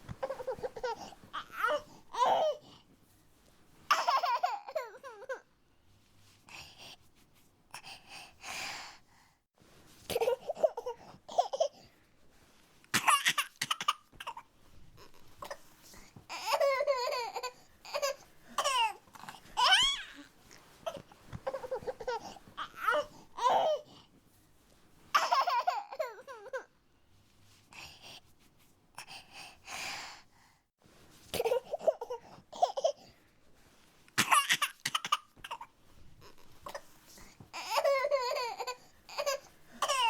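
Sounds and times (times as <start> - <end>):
baby whining and fussing: 0.1 - 2.8, 13.0 - 24.1, 34.2 - 40.0.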